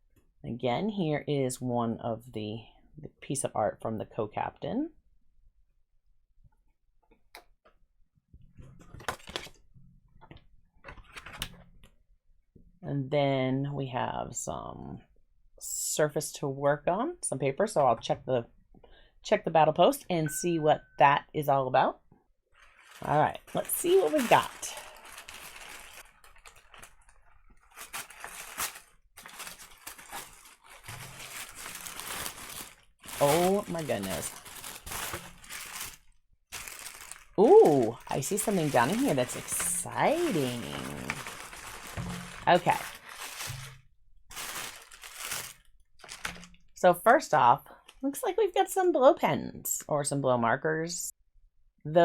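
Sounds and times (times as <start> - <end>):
paper and packaging rustling: 8.8 - 9.6, 22.6 - 46.6.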